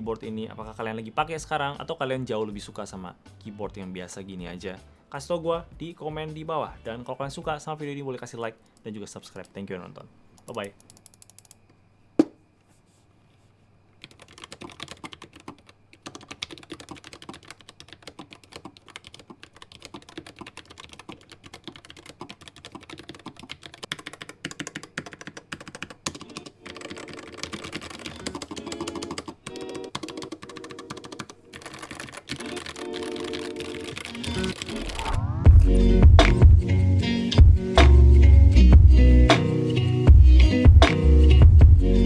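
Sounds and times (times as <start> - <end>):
mechanical keyboard typing: 10.4 - 11.6, 14.0 - 35.1.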